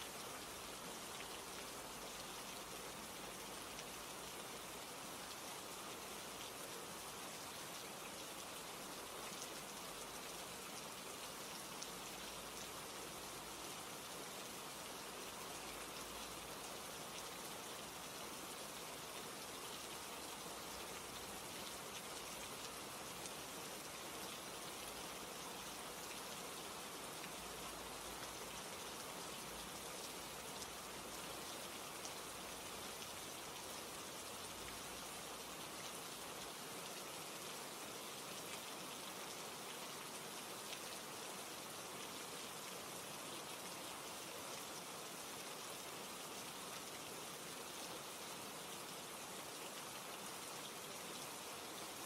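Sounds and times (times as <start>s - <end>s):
steady rain falling: 0.0s - 52.0s.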